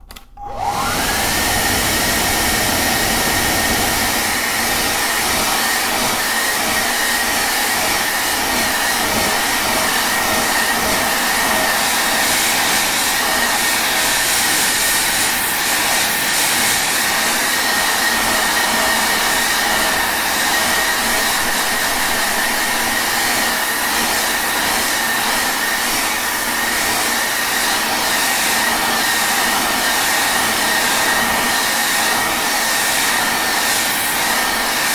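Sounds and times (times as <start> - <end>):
hair dryer running: 0.0 - 34.9.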